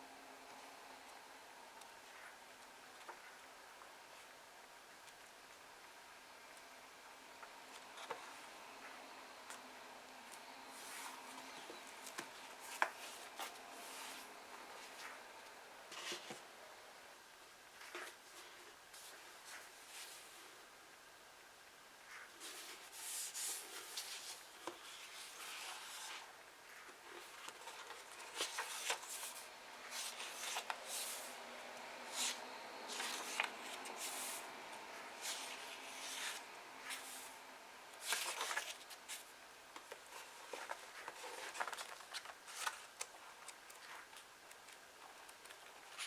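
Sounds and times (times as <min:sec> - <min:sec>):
book pages turning: 0:10.3 - 0:16.4, 0:22.4 - 0:26.3, 0:26.9 - 0:46.0.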